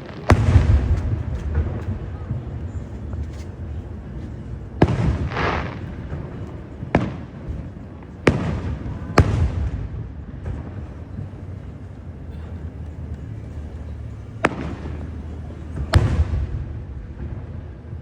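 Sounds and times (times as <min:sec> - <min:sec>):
crackling hiss: 0:00.0 - 0:09.6
fireworks booming: 0:00.0 - 0:18.0
steady low rumble: 0:00.0 - 0:18.0.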